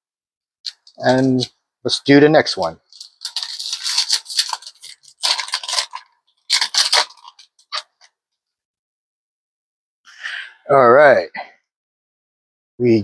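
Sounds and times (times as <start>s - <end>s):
foil wrapper crinkling and tearing: 0.7s - 1.5s, 2.9s - 8.1s.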